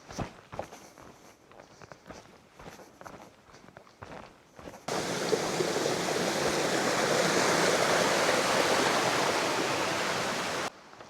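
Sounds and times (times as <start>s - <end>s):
flowing water rushing: 4.9s - 10.7s.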